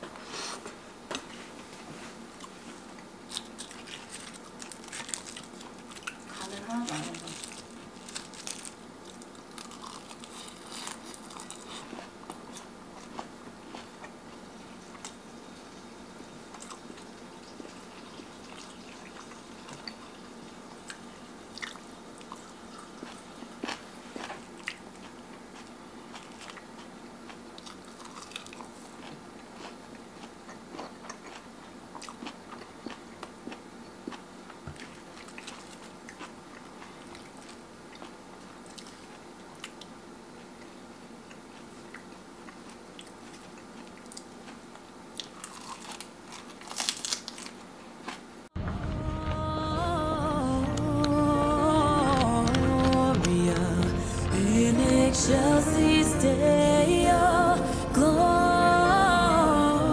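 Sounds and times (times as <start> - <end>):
person chewing crunchy food: 2.3 - 15.2, 20.8 - 39.9, 40.5 - 48.3
steady low hum: 47.4 - 59.9.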